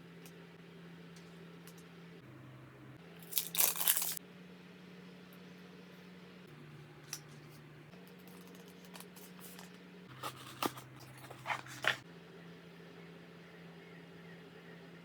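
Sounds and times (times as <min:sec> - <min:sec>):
paper and plastic rustling: 0:03.3 - 0:04.2, 0:08.2 - 0:12.0.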